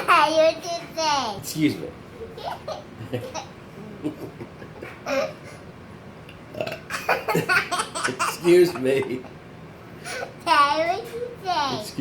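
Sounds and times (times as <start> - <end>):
family laughter: 7.0 - 9.4.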